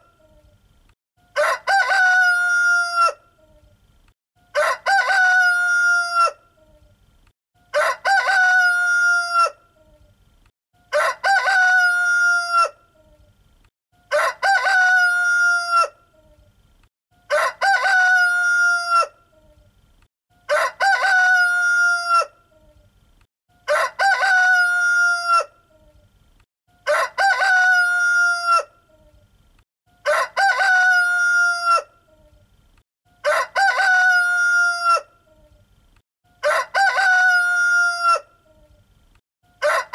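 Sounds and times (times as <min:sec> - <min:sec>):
rooster crowing: 0:01.3 - 0:03.2, 0:04.5 - 0:06.4, 0:07.7 - 0:09.6, 0:10.9 - 0:12.8, 0:14.1 - 0:16.0, 0:17.3 - 0:19.2, 0:20.4 - 0:22.4, 0:23.7 - 0:25.5, 0:26.8 - 0:28.7, 0:30.0 - 0:31.9, 0:33.2 - 0:35.1, 0:36.4 - 0:38.3, 0:39.6 - 0:39.9.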